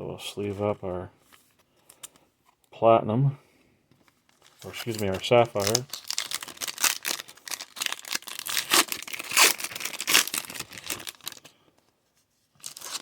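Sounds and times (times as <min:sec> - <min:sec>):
plastic packaging crinkling and tearing: 0:04.2 - 0:11.6, 0:12.6 - 0:13.0.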